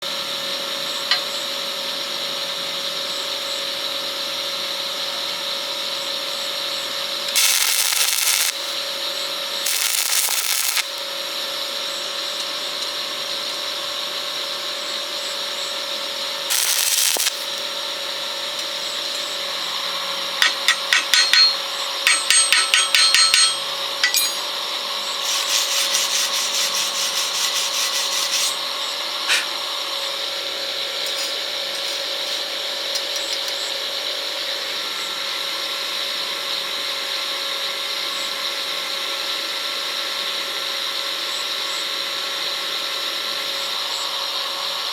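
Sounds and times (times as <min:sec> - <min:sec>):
harsh grinding: 0:07.3 - 0:08.8, 0:09.7 - 0:11.0, 0:16.5 - 0:17.6, 0:25.2 - 0:29.6, 0:31.0 - 0:33.4
machine hum: 0:07.3 - 0:08.9, 0:09.6 - 0:11.1, 0:16.5 - 0:32.4
scraping: 0:31.0 - 0:32.5.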